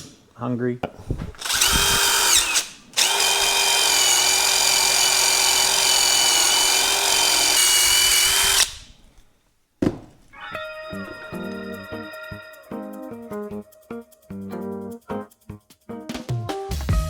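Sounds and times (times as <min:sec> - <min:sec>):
power drill whining: 0:01.0 - 0:09.3.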